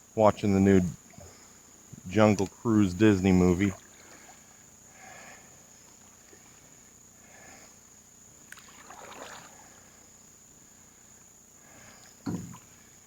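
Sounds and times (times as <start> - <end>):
paddle swishing through water: 8.5 - 10.1
low knock on canoe: 12.2 - 12.7.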